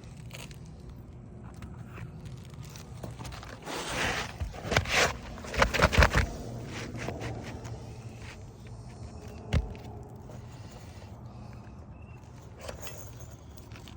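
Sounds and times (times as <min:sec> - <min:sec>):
shingles scraping and crackling: 0:00.0 - 0:10.9
dull thumps: 0:09.5 - 0:09.9.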